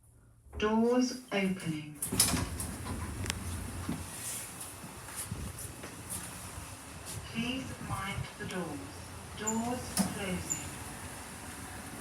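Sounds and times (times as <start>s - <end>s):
background hiss and rumble: 1.7s - 12.0s
lift doors sliding open: 2.0s - 5.1s, 9.1s - 12.0s.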